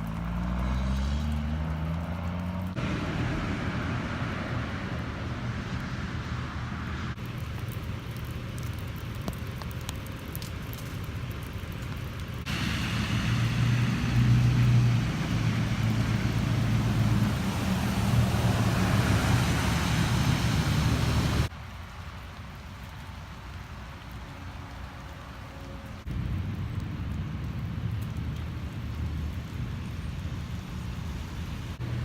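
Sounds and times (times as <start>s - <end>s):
low engine hum: 0.0s - 8.6s, 12.4s - 21.5s
vehicle road noise: 0.0s - 8.7s, 12.4s - 22.2s, 24.2s - 32.0s.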